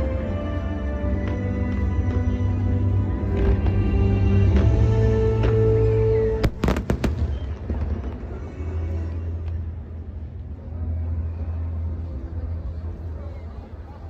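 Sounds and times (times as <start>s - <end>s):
low rumbling noise: 0.0s - 14.0s
music playing: 0.0s - 14.0s
fireworks bangs and crackles: 3.2s - 9.6s.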